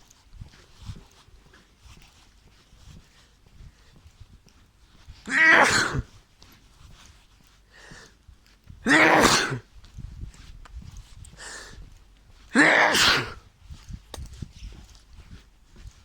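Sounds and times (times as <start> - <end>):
person sneezing loudly: 5.3 - 6.1, 8.8 - 9.7, 12.5 - 13.4.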